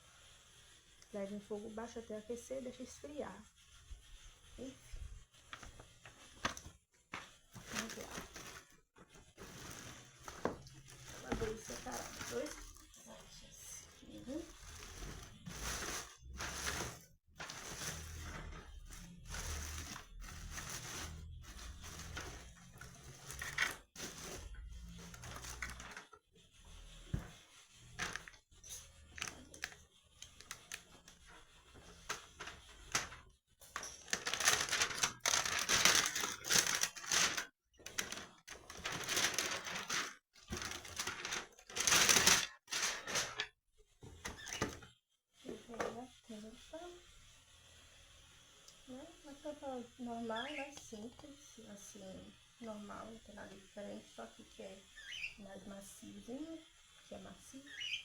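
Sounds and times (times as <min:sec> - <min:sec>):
packaging rustling and tearing: 0:05.5 - 0:26.1, 0:29.1 - 0:31.2, 0:33.8 - 0:43.4.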